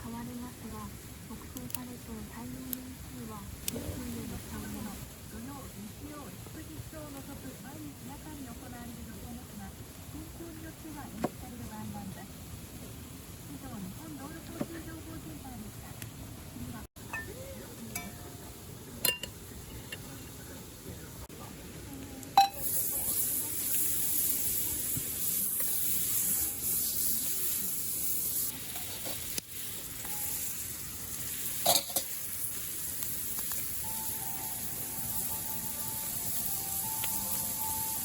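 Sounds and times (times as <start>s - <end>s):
food sizzling in a hot pan: 22.3s - 38.0s.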